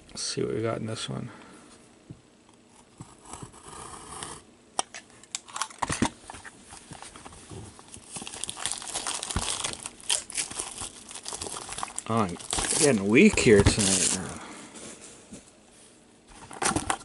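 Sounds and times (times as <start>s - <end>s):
foil wrapper crinkling and tearing: 7.8s - 14.4s.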